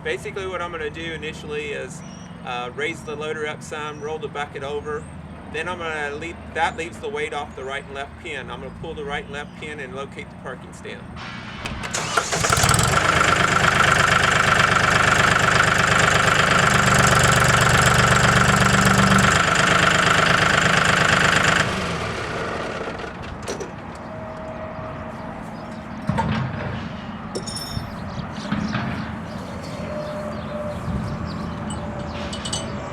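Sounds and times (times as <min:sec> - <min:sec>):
tractor diesel engine: 0:00.0 - 0:32.9
hydraulic whine: 0:11.2 - 0:32.9.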